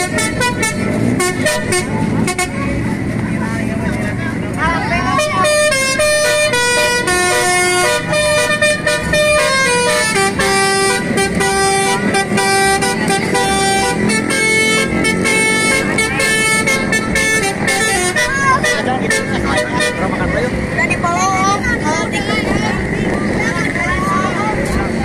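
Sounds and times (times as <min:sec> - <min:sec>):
musical air horn tune: 0:00.0 - 0:02.7, 0:05.1 - 0:20.4.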